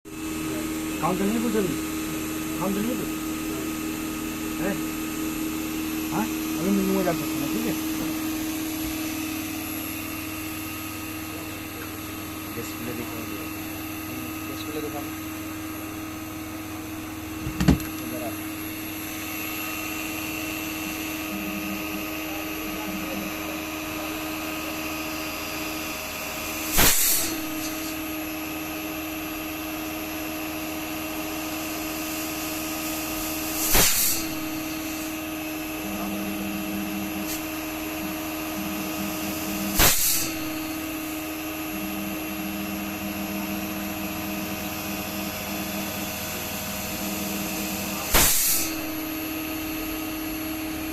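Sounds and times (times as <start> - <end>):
steady machine hum: 0.0 - 50.9
loud hissing bursts: 26.4 - 28.0, 33.4 - 35.2, 38.9 - 41.1, 48.0 - 49.1.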